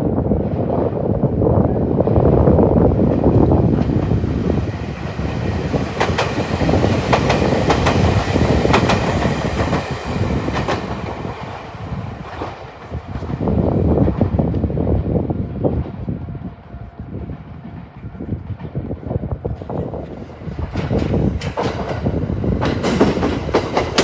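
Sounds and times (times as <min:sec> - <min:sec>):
train rumbling past: 0:00.0 - 0:24.0
wheels clacking over rail joints: 0:20.3 - 0:24.0.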